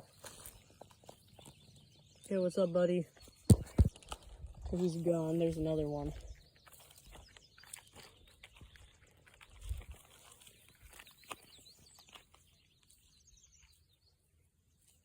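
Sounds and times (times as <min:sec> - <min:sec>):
dry vegetation crackling: 0:00.0 - 0:13.7
low thump: 0:03.5 - 0:03.9.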